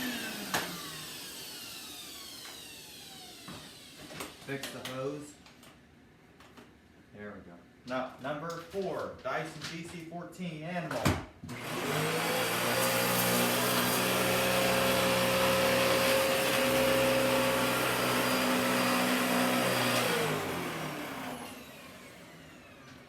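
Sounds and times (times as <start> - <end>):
vacuum cleaner motor humming: 0.0 - 4.4, 11.5 - 23.0.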